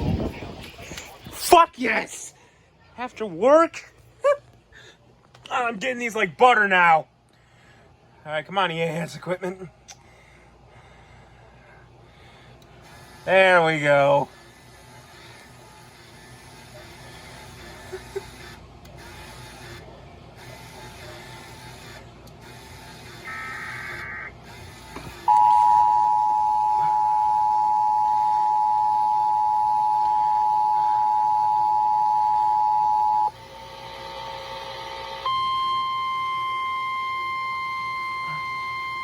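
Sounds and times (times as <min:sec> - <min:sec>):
two-tone alert signal: 0:25.3 - 0:33.3.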